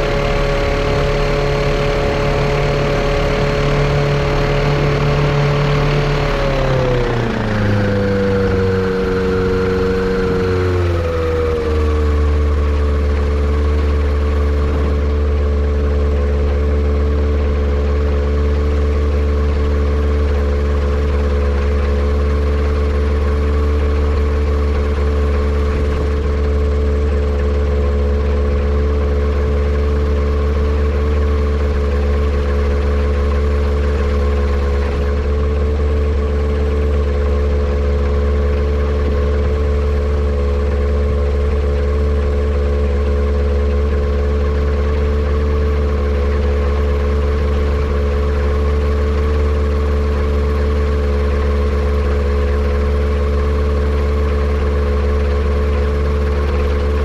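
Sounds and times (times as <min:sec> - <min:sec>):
airplane engine running steadily: 0:00.0 - 0:57.0.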